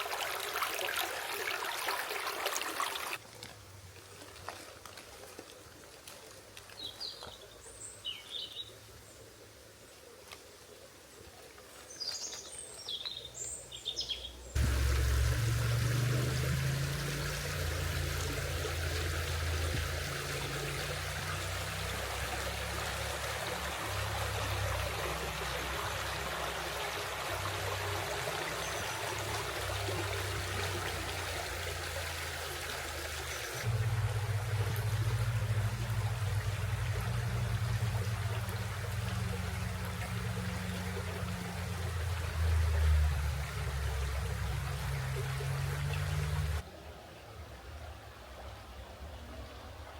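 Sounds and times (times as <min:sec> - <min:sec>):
river flowing: 0:00.0 - 0:06.7, 0:14.6 - 0:49.9
low rumble: 0:14.6 - 0:21.2.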